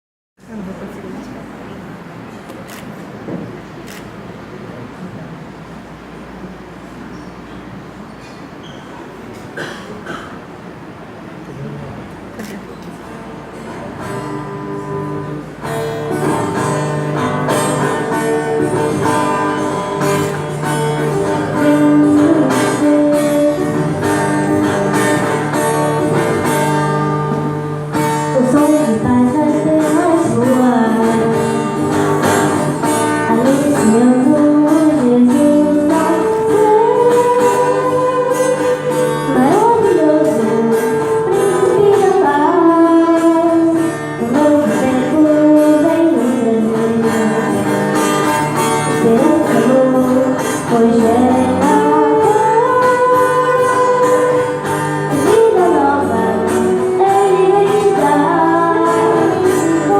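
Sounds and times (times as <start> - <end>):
plucked-string accompaniment: 13.0 - 59.9
person singing: 18.6 - 25.5, 28.3 - 31.8, 33.2 - 48.0, 48.8 - 59.9.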